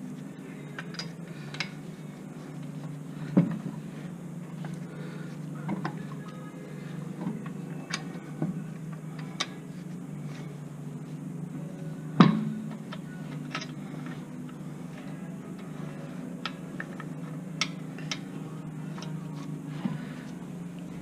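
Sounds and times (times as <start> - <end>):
low steady hum: 0.0 - 21.0
tools and brake parts clicking: 0.7 - 1.8, 7.1 - 9.7, 12.2 - 15.7, 16.4 - 18.3, 18.9 - 19.5.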